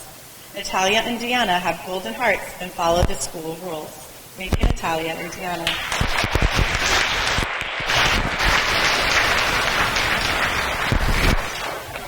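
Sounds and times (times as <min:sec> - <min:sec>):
children applauding: 0:05.6 - 0:12.0.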